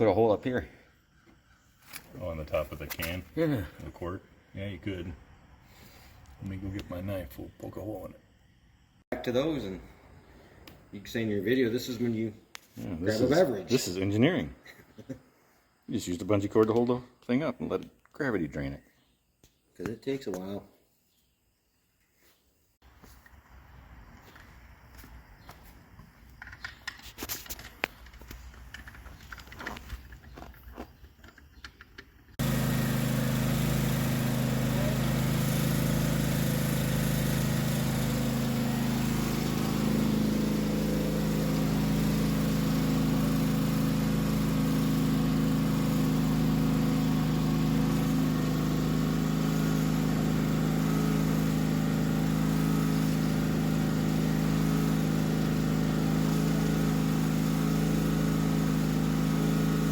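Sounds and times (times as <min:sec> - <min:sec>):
garden tractor engine running: 0:01.8 - 0:05.1, 0:32.4 - 0:59.9.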